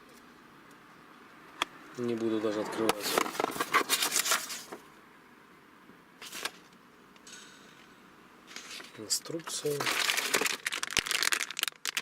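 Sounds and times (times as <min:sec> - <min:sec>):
cardboard packaging rustling: 0:03.0 - 0:04.8, 0:08.5 - 0:12.0.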